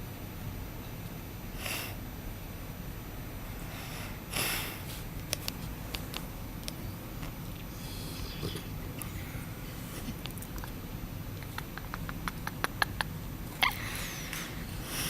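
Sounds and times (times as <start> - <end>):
steady low hum: 0.0 - 15.0
dog snoring: 7.8 - 9.5.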